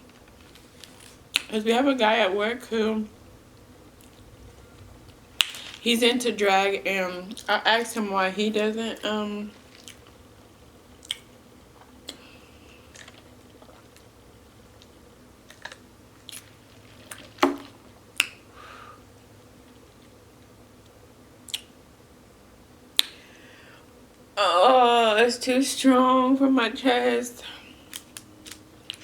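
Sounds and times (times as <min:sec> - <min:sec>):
person chewing food: 0:09.6 - 0:18.4
mouth clicks and smacks: 0:11.0 - 0:12.2, 0:17.2 - 0:18.4, 0:21.4 - 0:21.8, 0:23.0 - 0:23.2.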